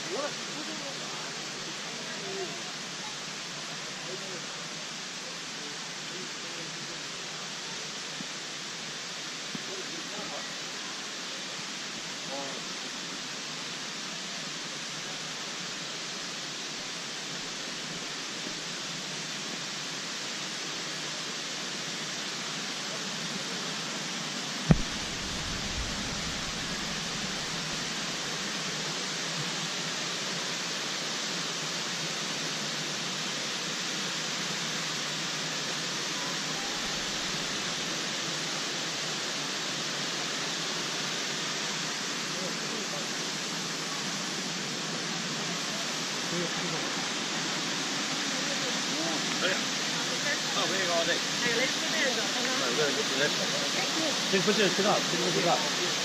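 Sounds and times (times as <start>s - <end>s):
waterfall rushing: 0.0s - 56.0s
sharp thump: 24.7s - 27.4s.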